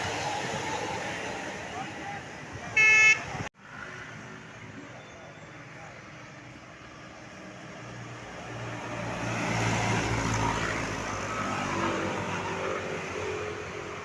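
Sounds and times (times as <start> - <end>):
bus driving past: 3.6 - 14.0.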